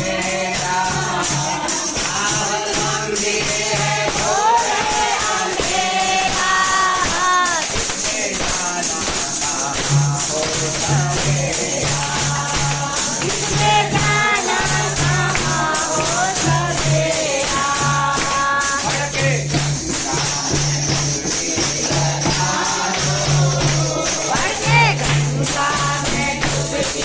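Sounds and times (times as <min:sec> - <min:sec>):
tambourine jingling: 0:00.0 - 0:27.0
voices singing devotional song: 0:00.0 - 0:27.0.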